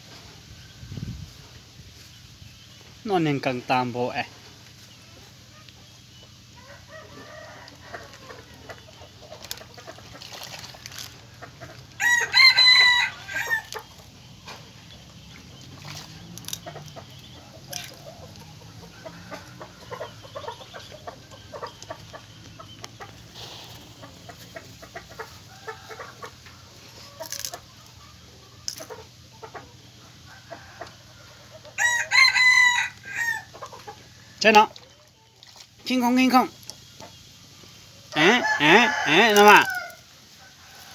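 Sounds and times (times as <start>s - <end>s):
short bird calls and ticks: 7.6s - 25.4s, 32.9s - 37.8s
rooster crowing: 12.0s - 13.8s, 31.8s - 33.5s, 38.1s - 40.9s.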